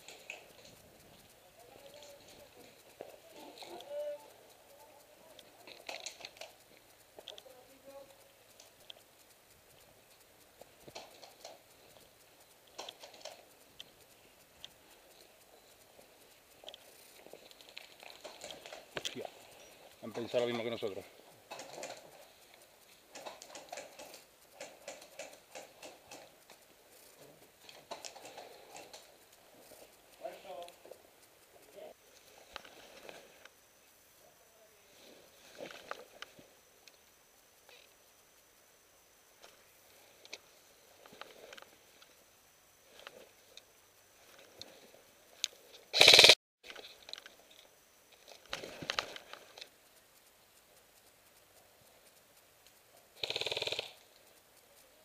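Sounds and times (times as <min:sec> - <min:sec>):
gear clicking and rustling: 0:00.0 - 0:55.0
airsoft rifle full-auto burst: 0:45.9 - 0:46.4, 0:53.2 - 0:54.1.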